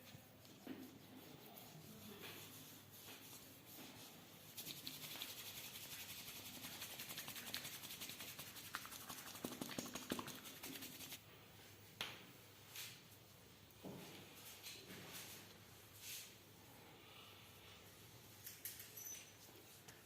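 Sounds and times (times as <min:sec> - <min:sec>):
hands rubbing against skin: 0:00.2 - 0:11.2.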